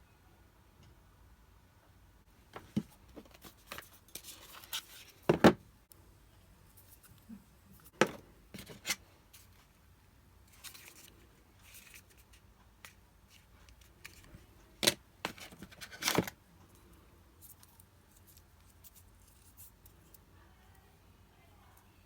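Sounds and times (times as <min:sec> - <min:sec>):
cardboard and plastic rustling: 0:02.6 - 0:05.6, 0:07.8 - 0:09.7, 0:10.5 - 0:12.4, 0:13.3 - 0:16.4.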